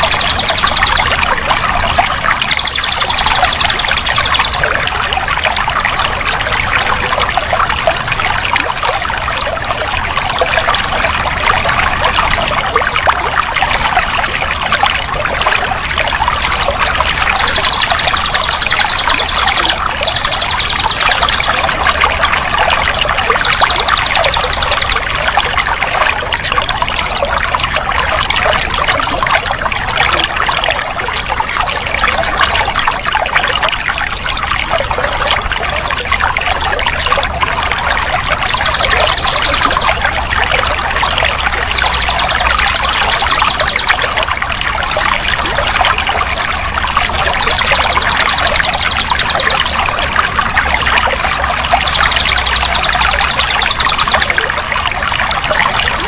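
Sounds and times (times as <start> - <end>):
high fast trill: 0.0 - 1.3, 2.2 - 4.8, 17.3 - 22.0, 23.3 - 25.1, 38.3 - 40.0, 41.6 - 44.4, 47.4 - 49.8, 51.7 - 54.5
water flowing and trickling: 0.0 - 56.0.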